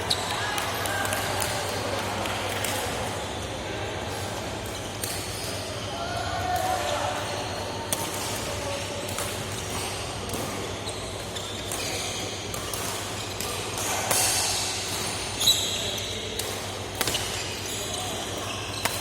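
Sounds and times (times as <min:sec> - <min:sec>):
echoing hall background: 0:00.0 - 0:19.0
shoe squeaks: 0:15.4 - 0:16.1.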